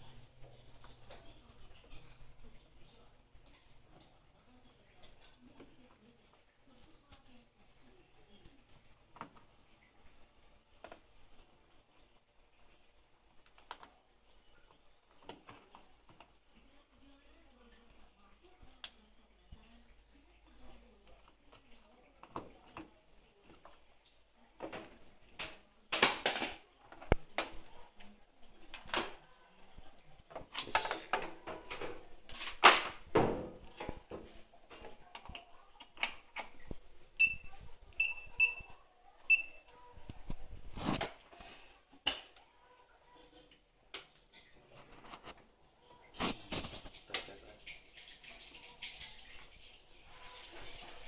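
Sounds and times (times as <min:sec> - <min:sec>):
parts and tools clicking and rustling: 0:24.6 - 0:27.6, 0:30.3 - 0:37.3.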